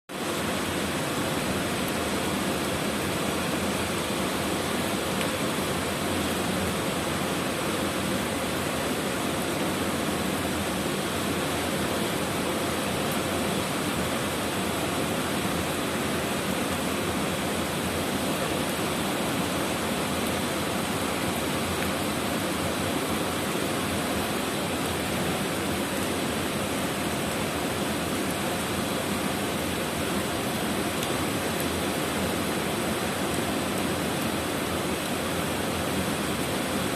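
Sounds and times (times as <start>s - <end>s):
waterfall rushing: 0.1s - 36.9s.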